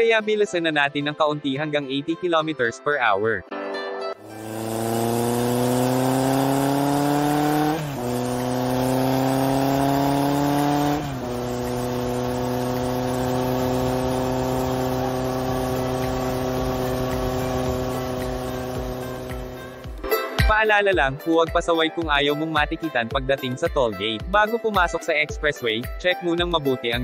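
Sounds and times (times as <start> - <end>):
car engine accelerating: 4.2 - 20.0.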